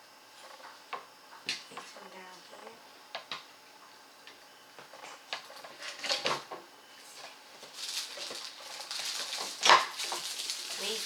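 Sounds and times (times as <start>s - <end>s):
rustling: 7.6s - 11.0s.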